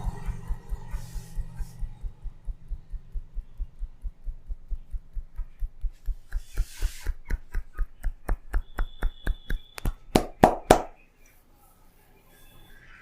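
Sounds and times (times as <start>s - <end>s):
rubbing swish: 0.2s - 2.4s, 4.6s - 8.6s
hands tapping on head: 3.9s - 11.0s.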